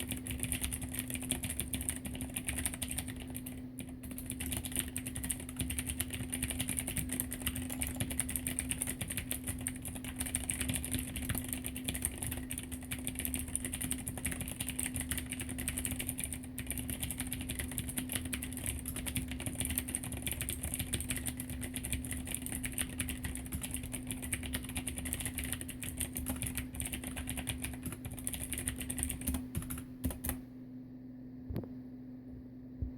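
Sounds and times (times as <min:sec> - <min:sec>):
typing on mechanical keyboard: 0:00.0 - 0:30.4.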